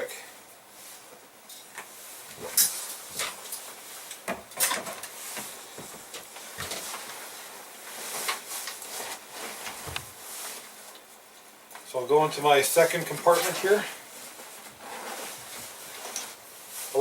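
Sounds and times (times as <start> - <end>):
bags rustling: 5.1 - 11.0, 12.7 - 17.0.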